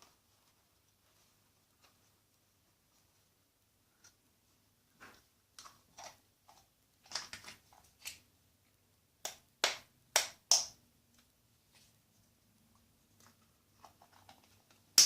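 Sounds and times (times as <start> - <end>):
sharp clicks and taps: 9.2 - 11.3.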